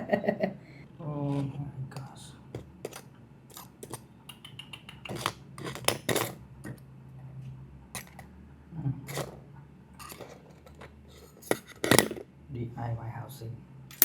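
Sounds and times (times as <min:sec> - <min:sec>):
faint low hum: 0:00.0 - 0:14.0
small metal tools clinking: 0:02.8 - 0:04.0, 0:05.1 - 0:06.8, 0:08.0 - 0:08.2, 0:10.0 - 0:12.2.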